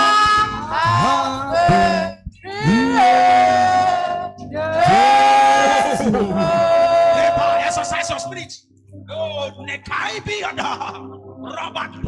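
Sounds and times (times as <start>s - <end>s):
person singing long notes: 0.0s - 7.9s.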